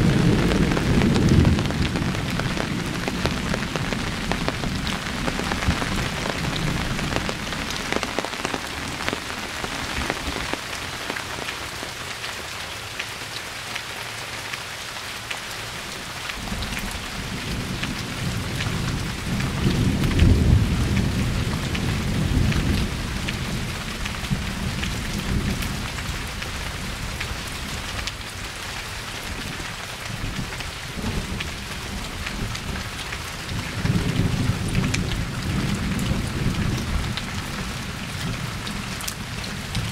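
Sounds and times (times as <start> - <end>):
rolling thunder: 0.0 - 10.6, 16.4 - 25.8
steady rain falling: 0.0 - 39.9.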